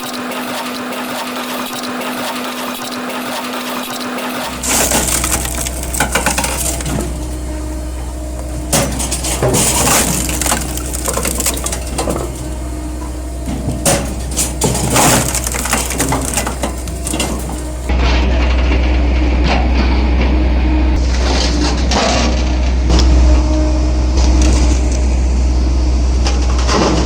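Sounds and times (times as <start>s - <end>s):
machine low drone: 4.2s - 27.0s
wood cracking and crunching: 4.5s - 17.9s.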